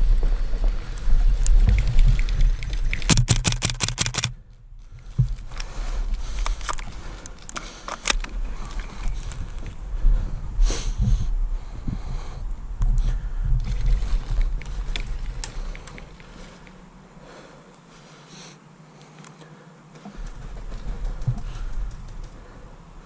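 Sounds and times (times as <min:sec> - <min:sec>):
wind on microphone: 0:00.0 - 0:03.4, 0:08.2 - 0:16.2
low rumble of movement: 0:00.0 - 0:17.4, 0:20.0 - 0:23.0
airsoft rifle shots: 0:03.1 - 0:04.3.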